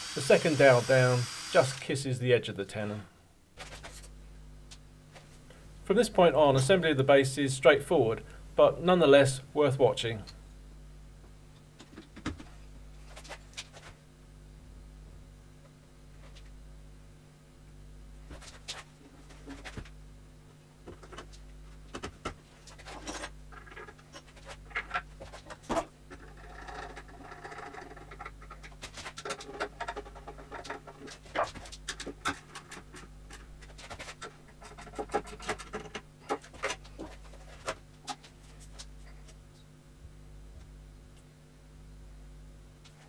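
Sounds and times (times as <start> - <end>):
steady low hum: 0.0 - 43.0
knocks clicks and scraping of wood: 20.9 - 38.9.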